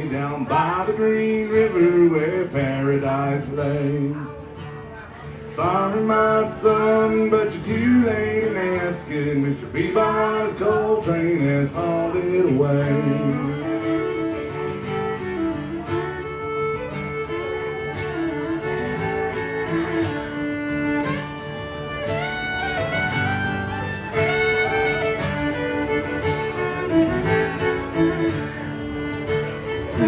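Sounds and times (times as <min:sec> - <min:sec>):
acoustic guitar accompaniment: 0:00.0 - 0:30.0
fiddle playing: 0:00.0 - 0:30.0.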